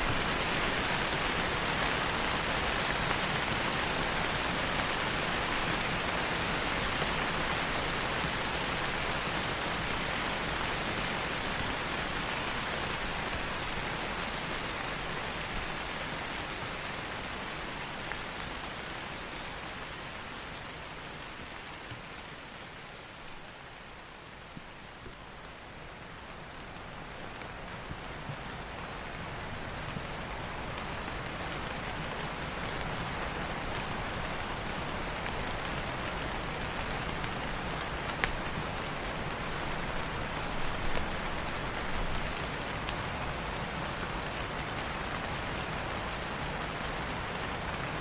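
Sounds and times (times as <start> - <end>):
steady rain falling: 0.0 - 48.0.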